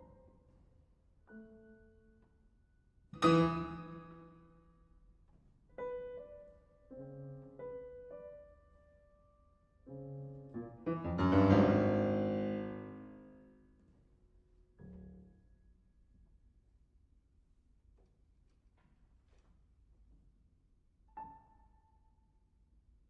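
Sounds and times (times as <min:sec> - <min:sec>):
solo piano chords: 0:09.9 - 0:13.6.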